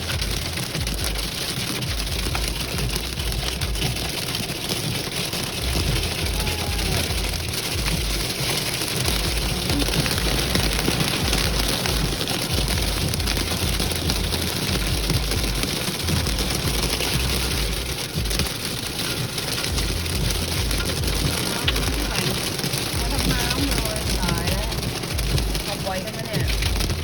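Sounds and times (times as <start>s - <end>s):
hail and heavy rain: 0.0s - 27.0s.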